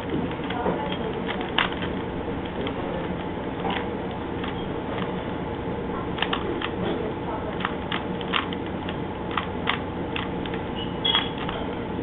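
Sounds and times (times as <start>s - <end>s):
puzzle cube clicking and rattling: 0.1s - 5.1s, 6.2s - 6.8s, 7.5s - 10.6s.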